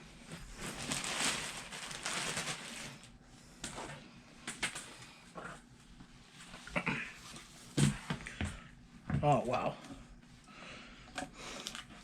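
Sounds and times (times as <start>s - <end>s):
packaging rustling: 0.3s - 3.2s.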